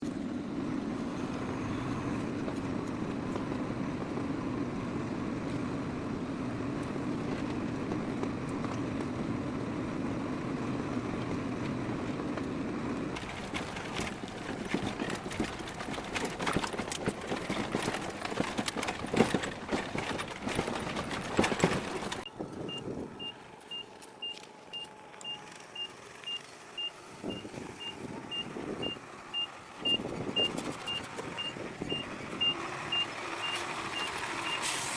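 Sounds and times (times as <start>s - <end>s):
machinery clattering and rattling: 0.0s - 22.3s, 27.4s - 34.9s
engine running: 0.0s - 34.9s
reversing alarm beeping: 22.7s - 34.7s.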